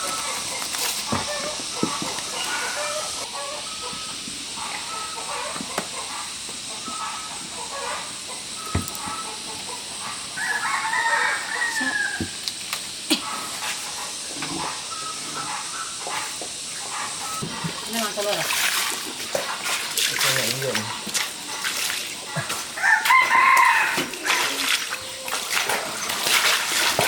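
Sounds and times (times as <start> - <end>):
rooster crowing: 1.2 - 4.0, 10.1 - 12.4, 22.4 - 25.2.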